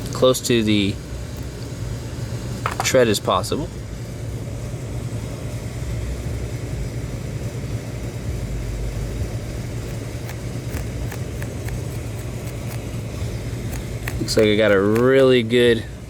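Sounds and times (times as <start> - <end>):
steady low hum: 0.0 - 16.0
razor knife trimming rubber clicks: 9.8 - 15.3.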